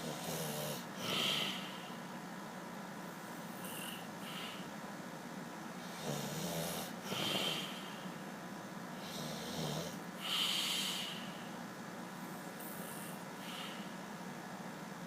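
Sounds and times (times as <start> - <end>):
person snoring: 0.0 - 1.9, 5.9 - 8.0, 9.0 - 11.2.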